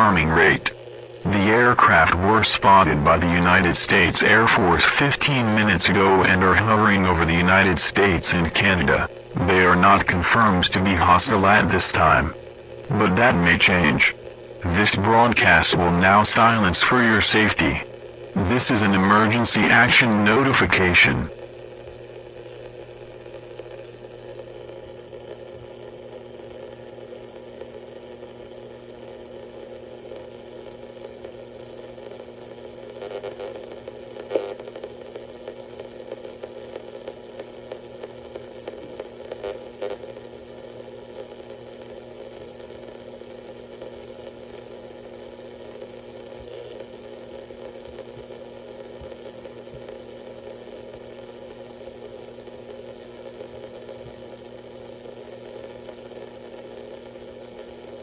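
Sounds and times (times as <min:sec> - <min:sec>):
faint crackle: 0:00.4 - 0:02.9, 0:07.2 - 0:18.4, 0:19.7 - 0:58.0.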